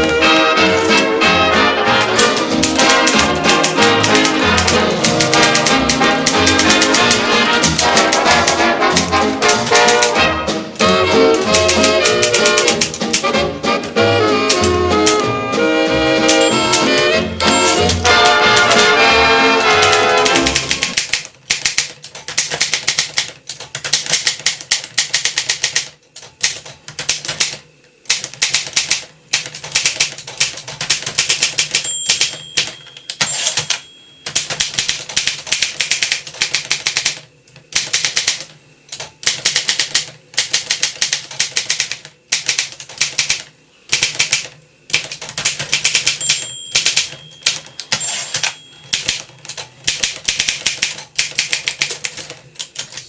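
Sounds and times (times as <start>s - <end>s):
typewriter key strikes: 1.9s - 10.2s, 10.8s - 15.3s, 15.9s - 19.0s, 19.6s - 37.2s, 37.8s - 53.0s
typewriter bell ringing: 15.9s - 19.0s, 31.4s - 35.0s, 45.8s - 49.3s.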